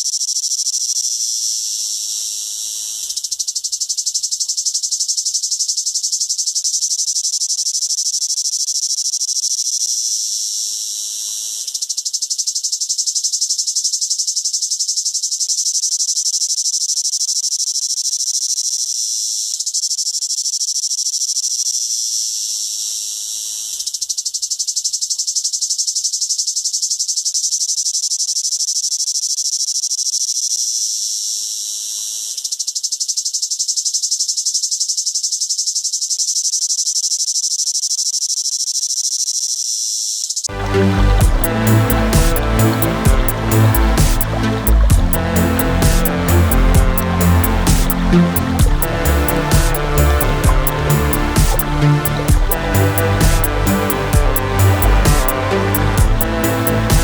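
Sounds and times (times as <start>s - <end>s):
cicada buzzing: 40.9s - 57.0s.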